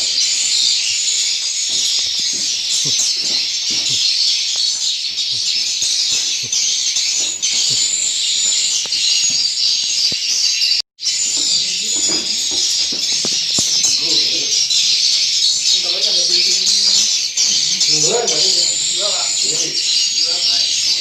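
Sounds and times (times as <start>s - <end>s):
swiftlets twittering: 11.1s - 21.0s.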